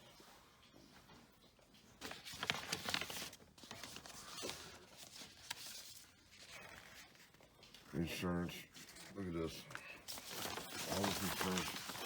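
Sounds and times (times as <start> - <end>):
paper and debris rustling: 2.0 - 7.8, 8.7 - 12.0.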